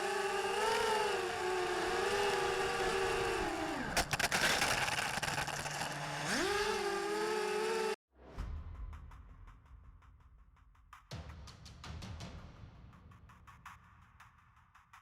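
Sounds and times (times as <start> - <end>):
drone motors whining: 0.0 - 8.0.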